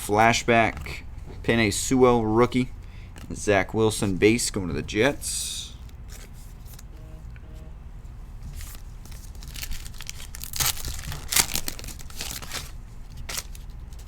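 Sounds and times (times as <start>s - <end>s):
wrapper being torn and crumpled: 8.7s - 14.0s.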